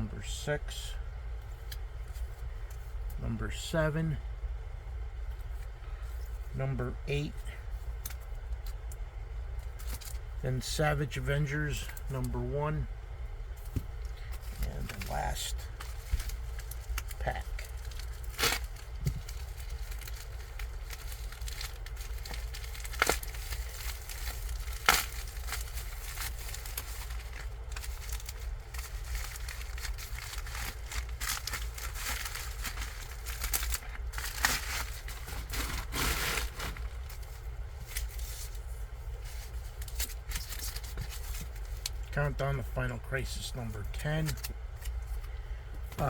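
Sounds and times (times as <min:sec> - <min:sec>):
packaging crinkling and tearing: 0:14.4 - 0:38.6.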